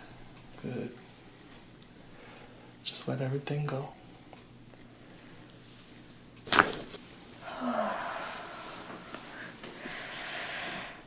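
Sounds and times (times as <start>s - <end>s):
person sighing: 7.4s - 8.6s.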